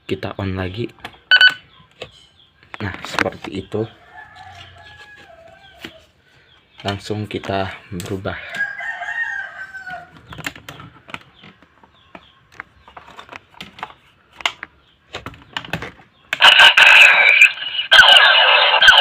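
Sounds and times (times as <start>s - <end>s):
electronic toy sound effect: 16.4s - 19.0s.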